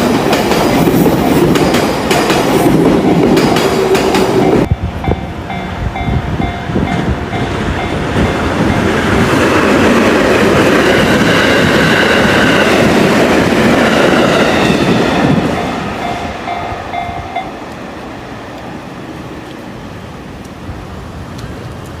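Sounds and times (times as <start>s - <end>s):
train wheels clattering on rails: 0.0s - 4.7s
road traffic: 0.0s - 22.0s
crossing warning bell: 3.0s - 9.6s, 15.2s - 17.7s.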